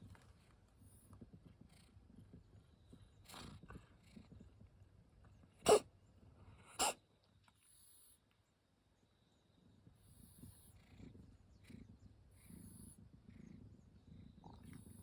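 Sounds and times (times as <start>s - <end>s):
pet animal sneezing: 5.6s - 5.9s, 6.6s - 7.0s.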